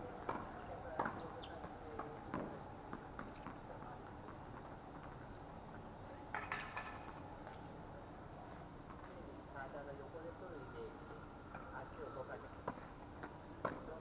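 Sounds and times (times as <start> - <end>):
tennis balls struck by rackets: 0.2 - 4.4, 12.6 - 14.0.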